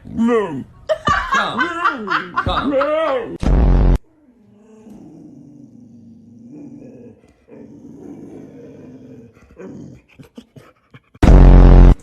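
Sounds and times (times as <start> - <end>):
dog growling: 4.5 - 11.2.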